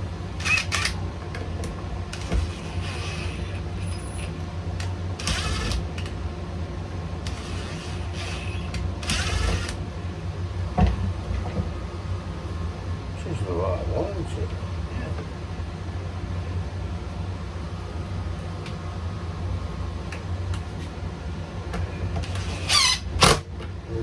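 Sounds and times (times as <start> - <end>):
steady low hum: 0.0 - 24.0.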